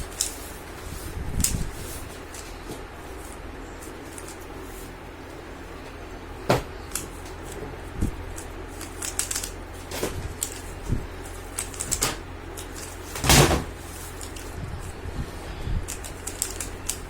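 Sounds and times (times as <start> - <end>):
puzzle cube clicking: 8.8 - 9.6, 15.9 - 17.0.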